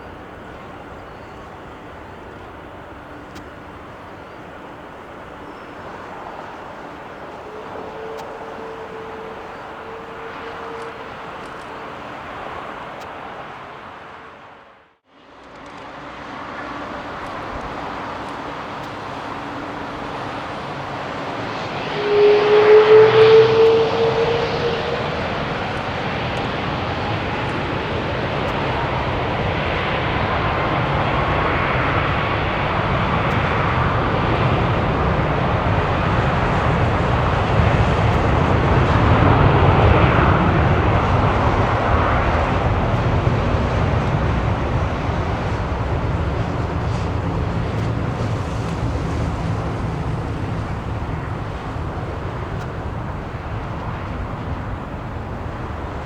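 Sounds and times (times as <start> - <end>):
jet engines roaring: 0.0 - 56.0
loud rising whine: 15.8 - 56.0.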